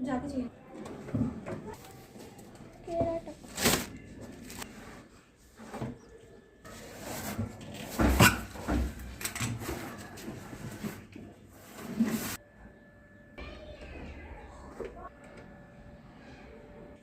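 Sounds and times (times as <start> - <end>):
objects knocking and scraping: 0.7 - 12.4.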